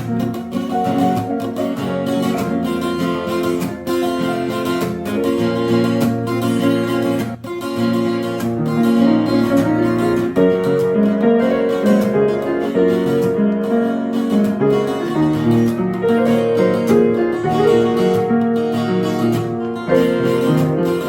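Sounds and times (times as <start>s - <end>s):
acoustic guitar strumming: 0.0s - 21.0s.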